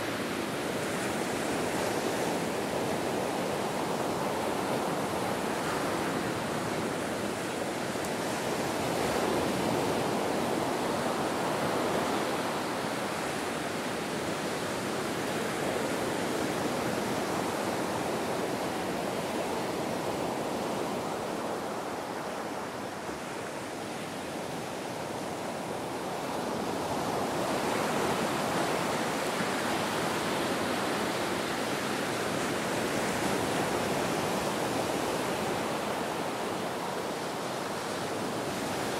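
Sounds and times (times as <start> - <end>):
ocean surf washing onto beach: 0.0 - 38.9.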